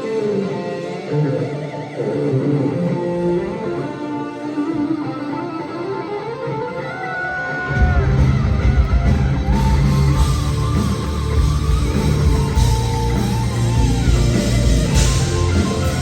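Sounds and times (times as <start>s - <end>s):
lead electric guitar melody: 0.0s - 16.0s
heavy metal band playing: 6.8s - 16.0s.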